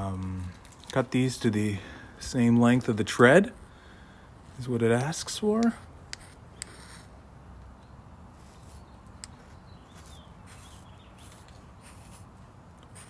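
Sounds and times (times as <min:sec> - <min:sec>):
soft rustles: 0:08.4 - 0:13.0.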